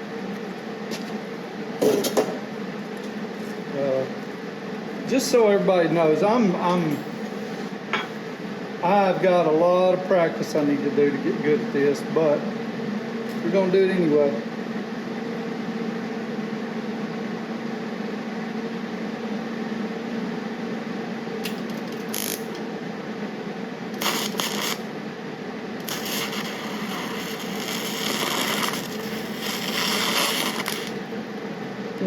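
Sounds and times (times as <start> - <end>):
electrical hum: 0.0 - 32.0
hissing scratchy noise: 24.0 - 24.8, 25.8 - 31.0.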